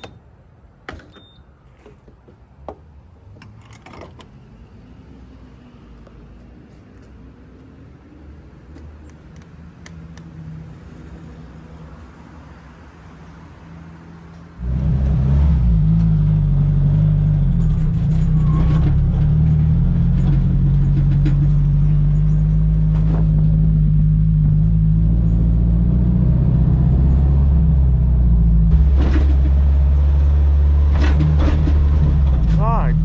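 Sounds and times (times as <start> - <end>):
car engine running steadily: 19.6 - 26.1, 27.8 - 33.0.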